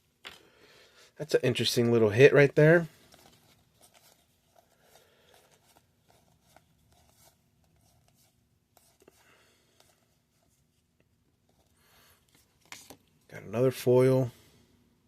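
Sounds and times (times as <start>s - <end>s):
trading cards being handled: 1.8s - 13.3s.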